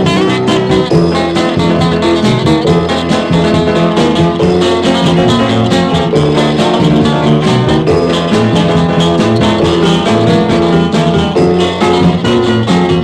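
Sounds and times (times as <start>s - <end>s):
bass and drums beat: 0.0s - 13.0s
folk-rock instrumental: 0.0s - 13.0s
strummed guitars: 0.0s - 13.0s.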